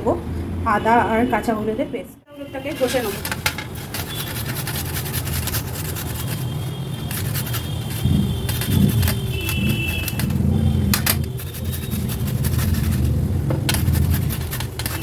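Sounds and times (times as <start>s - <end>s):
scratchy grating strokes: 2.7s - 15.0s
steady low rumble: 7.8s - 14.8s.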